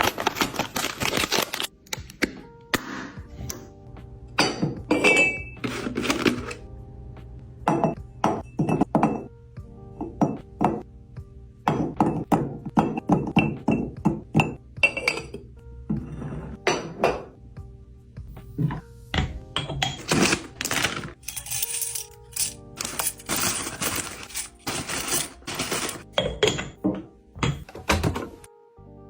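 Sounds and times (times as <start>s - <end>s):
soft background music: 0.0s - 29.0s
kitchen items clinking and thunking: 4.4s - 6.6s, 7.7s - 9.3s, 11.7s - 17.4s, 18.6s - 28.4s.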